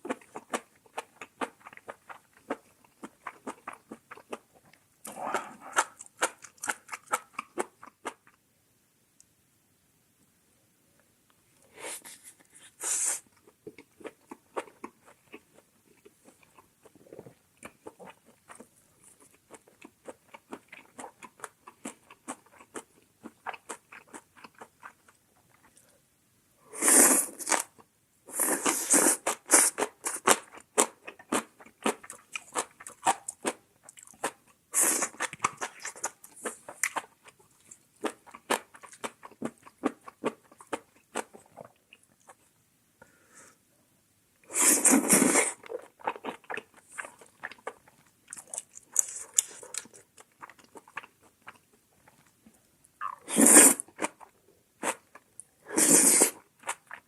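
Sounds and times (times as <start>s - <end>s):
chewing and crunchy biting: 45.2s - 52.3s.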